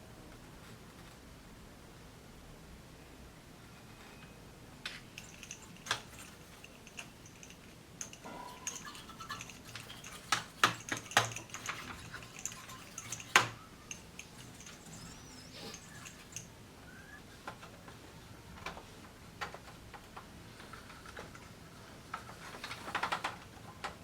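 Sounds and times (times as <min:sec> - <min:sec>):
hard plastic parts clicking: 0:04.9 - 0:15.1.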